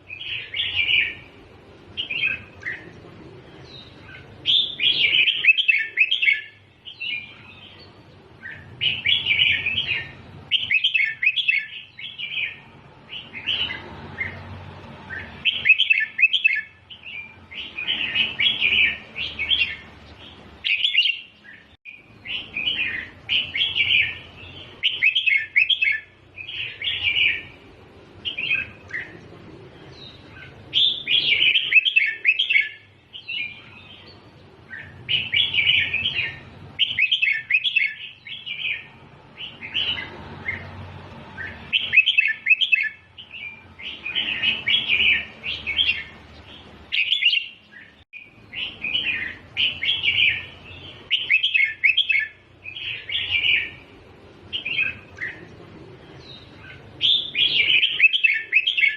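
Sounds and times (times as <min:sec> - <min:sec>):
bird singing short phrases: 0:41.4 - 0:53.9.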